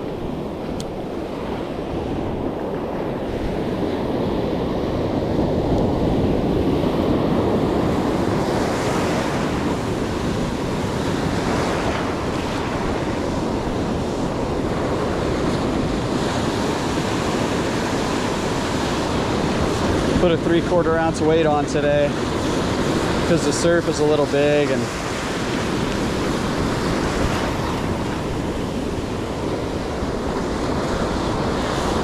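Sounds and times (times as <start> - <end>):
ocean surf breaking: 0.0 - 32.0
wind buffeting microphone: 0.0 - 32.0.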